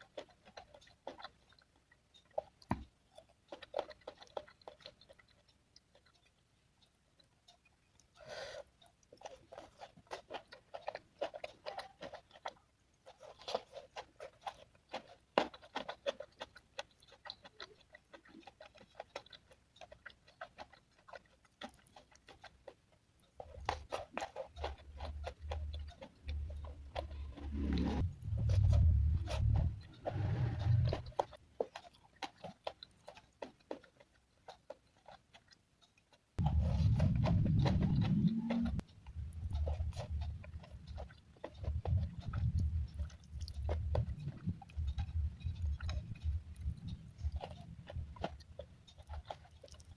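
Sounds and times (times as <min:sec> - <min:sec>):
person chewing and smacking: 0:00.0 - 0:49.9
low thumps and rumble: 0:26.3 - 0:31.3, 0:36.4 - 0:48.4.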